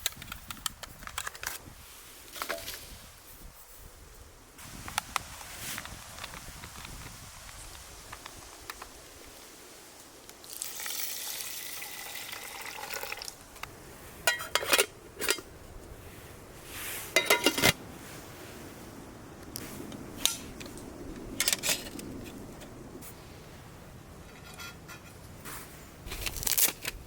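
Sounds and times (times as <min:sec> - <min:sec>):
metal mess tin clanking: 0:14.2 - 0:15.5, 0:17.2 - 0:17.8.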